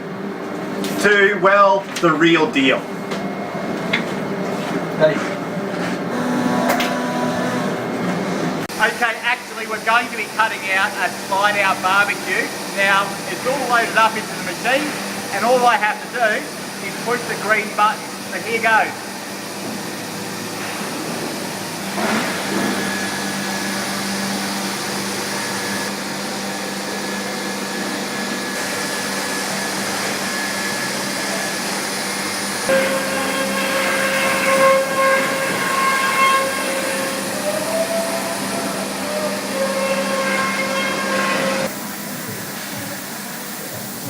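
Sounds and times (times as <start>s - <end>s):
router cutting high whine: 6.1s - 7.8s, 21.4s - 44.0s
router spindle whine: 6.1s - 7.8s.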